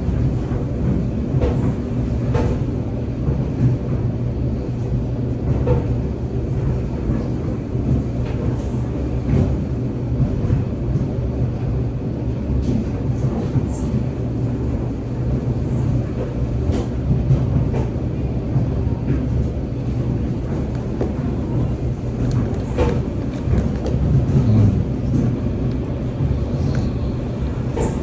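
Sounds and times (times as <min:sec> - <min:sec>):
low mechanical rumble: 0:13.1 - 0:28.0.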